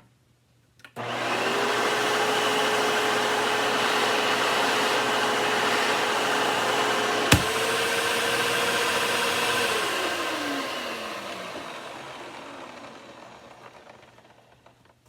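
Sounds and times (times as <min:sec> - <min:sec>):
vacuum cleaner motor humming: 0:01.0 - 0:14.5
sharp click: 0:07.3 - 0:07.6.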